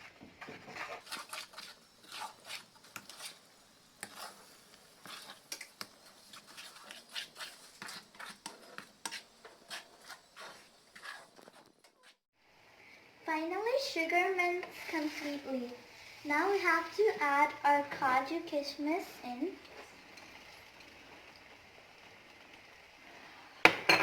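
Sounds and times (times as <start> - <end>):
utensil scraping a cooking pan: 0.0 - 12.2, 14.5 - 15.6.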